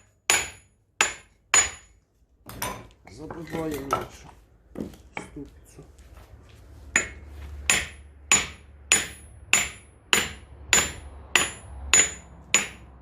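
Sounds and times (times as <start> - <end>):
hammer striking metal with ringing: 0.0 - 2.0, 6.9 - 13.0.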